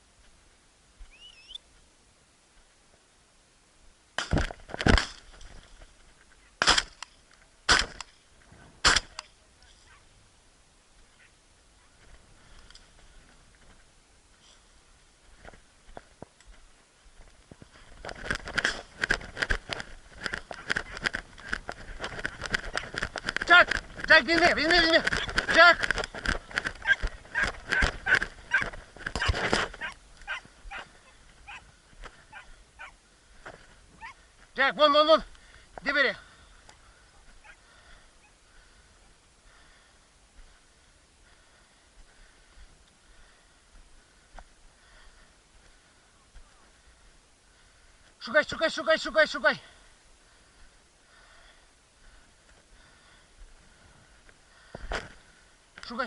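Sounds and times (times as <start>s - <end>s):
shotgun shots: 6.6s - 7.0s, 7.7s - 8.0s, 8.8s - 9.2s
dog barking and yelping: 26.8s - 33.0s, 34.0s - 34.2s, 37.1s - 37.6s.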